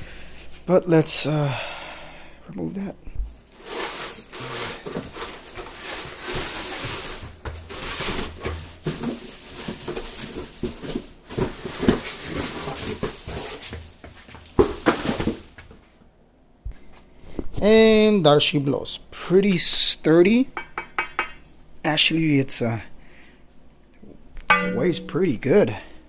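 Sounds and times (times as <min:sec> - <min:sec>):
packaging rustling and crinkling: 0:03.4 - 0:15.8.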